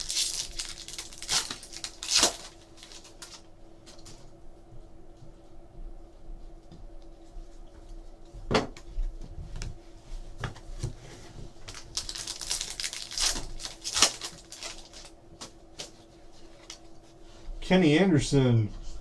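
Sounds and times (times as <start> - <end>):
packaging rustling: 0.0 - 4.2, 10.4 - 16.9.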